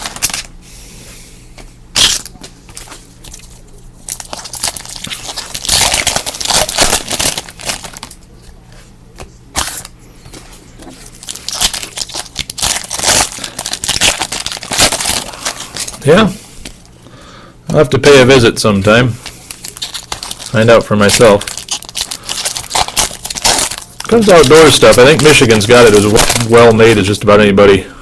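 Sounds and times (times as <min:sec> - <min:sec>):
wrappers crinkling and tearing: 0:00.0 - 0:00.5, 0:02.0 - 0:08.4, 0:09.6 - 0:09.9, 0:10.8 - 0:16.9, 0:19.2 - 0:27.2.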